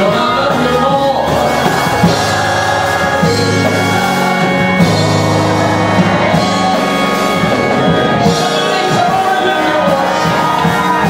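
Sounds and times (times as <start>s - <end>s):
singing: 0.0s - 5.2s, 8.2s - 11.0s
church band playing gospel music: 0.0s - 11.0s.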